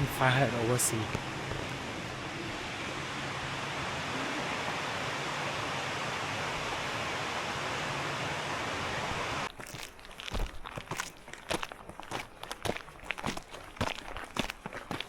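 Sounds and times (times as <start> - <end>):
footsteps on a trail: 0.0 - 2.2, 9.5 - 15.0
steady rushing noise: 0.0 - 9.5.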